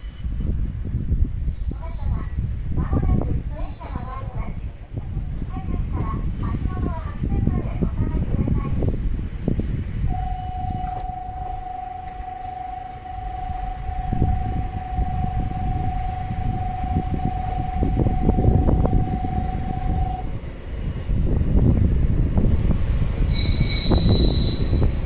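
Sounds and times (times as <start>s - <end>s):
train rumbling with knocks: 0.0s - 25.0s
steady single-pitched tone: 10.1s - 20.3s.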